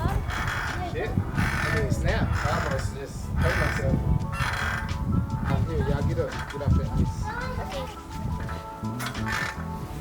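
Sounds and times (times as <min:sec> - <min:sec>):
background music with bass line: 0:00.0 - 0:10.0.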